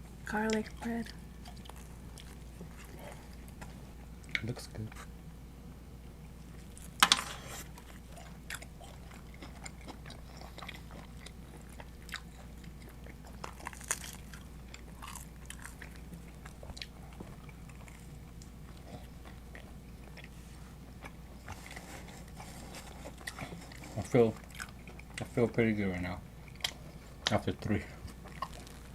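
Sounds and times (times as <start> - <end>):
soft chewing with mouth clicks: 0.4 - 5.1, 6.0 - 7.0, 7.6 - 28.9
crunchy bite: 13.4 - 15.8.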